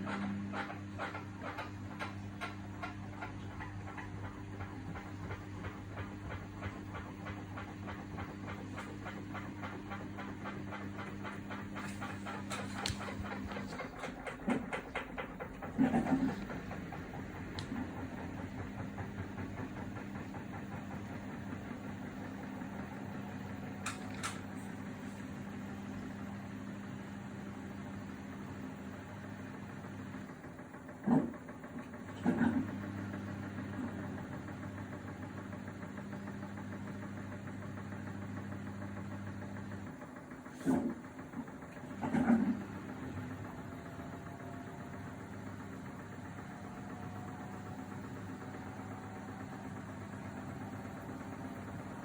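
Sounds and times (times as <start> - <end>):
washing machine motor hum: 0.0 - 52.0.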